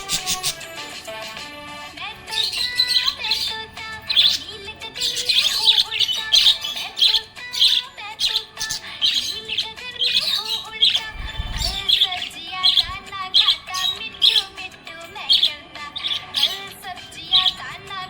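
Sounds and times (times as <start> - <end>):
budgerigar chirping and warbling: 0.0 - 1.5, 2.2 - 17.8
faint background music: 0.0 - 18.0
low rumble: 11.1 - 11.9.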